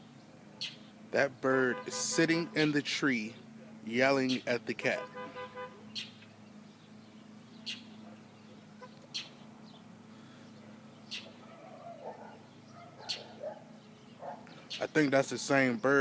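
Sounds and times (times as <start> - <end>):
bird scolding chirps: 0.6 - 0.9, 5.8 - 9.9, 10.9 - 15.0.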